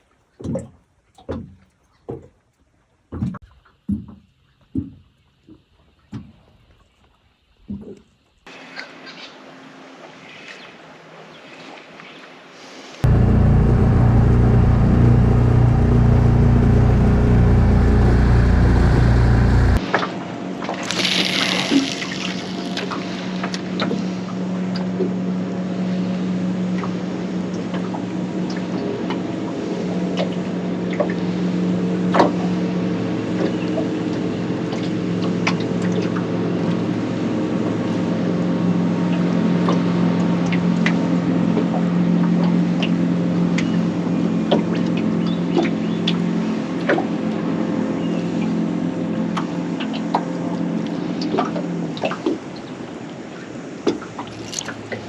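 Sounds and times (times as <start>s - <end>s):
water rushing along hull: 8.5s - 55.0s
outboard motor running: 13.0s - 19.8s.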